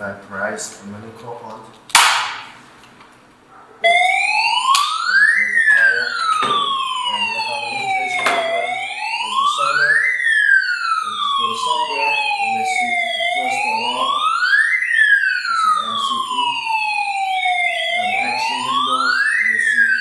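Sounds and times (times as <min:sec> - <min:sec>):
electronic alarm siren wailing: 0:03.8 - 0:20.0.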